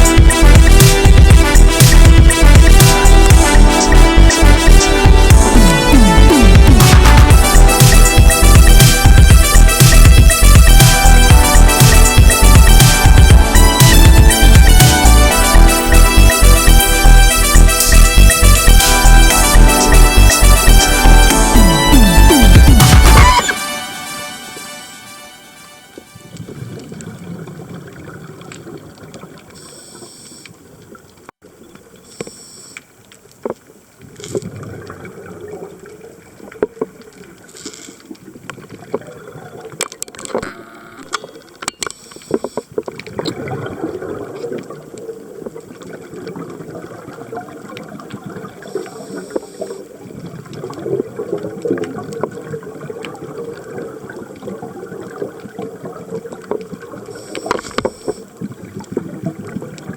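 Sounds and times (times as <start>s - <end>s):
regulator bubbles gurgling: 43.0s - 57.2s.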